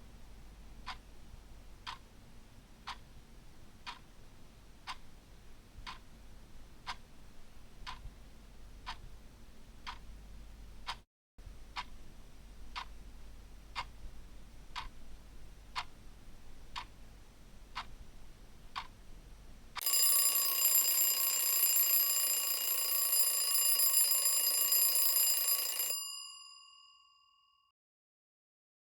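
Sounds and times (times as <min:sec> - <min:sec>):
clock ticking: 0:00.7 - 0:02.2, 0:02.8 - 0:08.2, 0:08.8 - 0:15.0, 0:15.7 - 0:17.0, 0:17.7 - 0:19.0
alarm clock bell ringing: 0:19.8 - 0:27.3.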